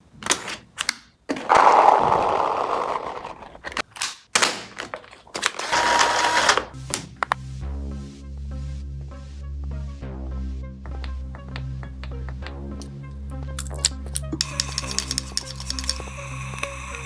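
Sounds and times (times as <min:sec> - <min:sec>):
toy blaster clicking: 0:03.8 - 0:07.3, 0:13.6 - 0:17.0
hissing bursts: 0:14.3 - 0:17.0.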